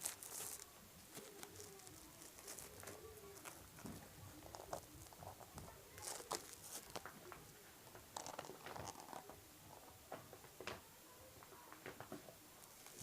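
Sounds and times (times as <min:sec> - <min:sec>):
packaging crinkling and tearing: 0:00.0 - 0:07.5.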